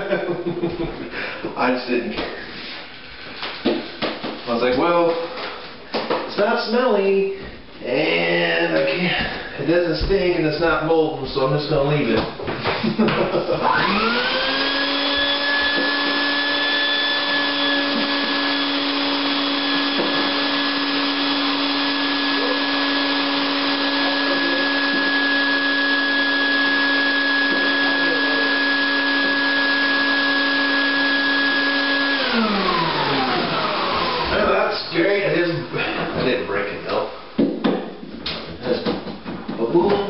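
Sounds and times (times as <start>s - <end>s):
shop vac whining: 7.7s - 37.0s.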